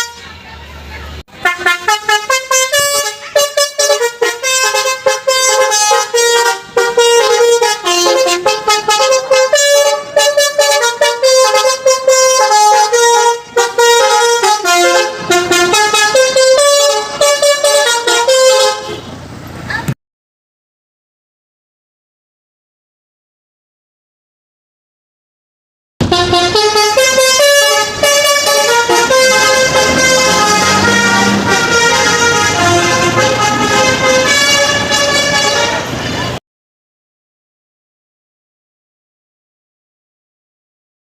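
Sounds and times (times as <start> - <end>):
bus musical horn tune: 0.0 - 0.4, 1.3 - 19.2, 26.0 - 36.4.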